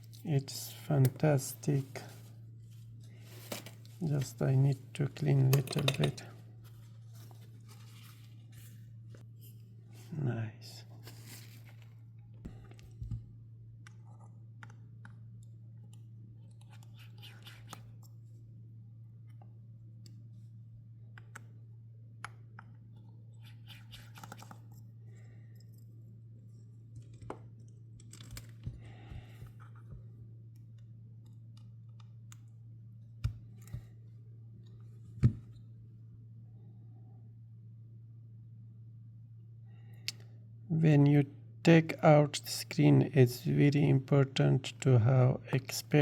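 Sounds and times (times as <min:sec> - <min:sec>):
steady low hum: 0:00.0 - 0:46.0.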